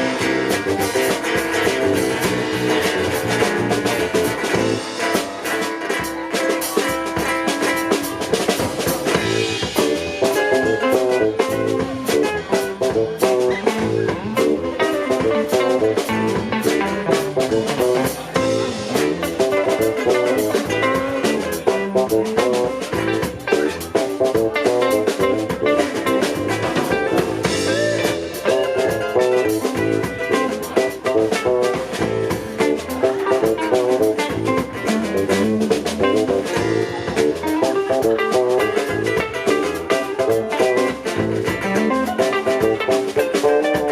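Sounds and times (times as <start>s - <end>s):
drum kit: 0.0s - 43.9s
electric guitar: 0.0s - 43.9s.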